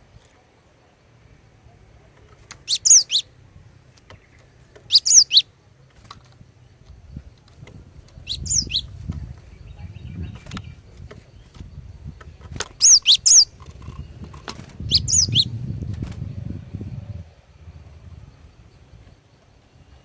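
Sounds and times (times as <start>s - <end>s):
bird calling sharp notes: 2.6s - 3.4s, 4.9s - 5.5s, 12.8s - 13.6s, 14.8s - 15.6s
low rumble: 13.5s - 19.1s.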